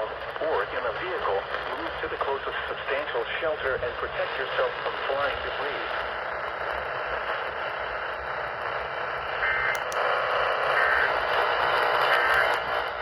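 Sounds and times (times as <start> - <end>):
radio static hiss: 0.0 - 13.0
faint short data bursts: 9.4 - 12.8.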